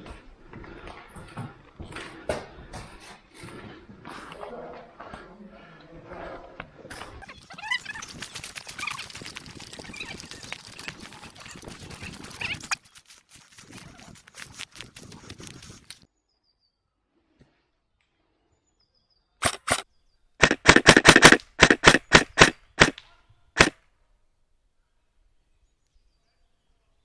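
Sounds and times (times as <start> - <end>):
rustling movement with clicks: 7.2 - 16.1
airsoft gun shots: 19.4 - 19.8, 20.4 - 23.0, 23.6 - 23.8.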